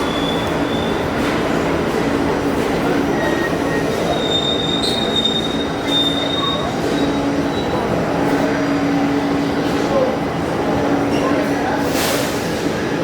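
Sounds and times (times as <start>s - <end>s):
wheels squealing on rails: 0.0s - 8.4s
subway car rumbling: 0.0s - 13.0s.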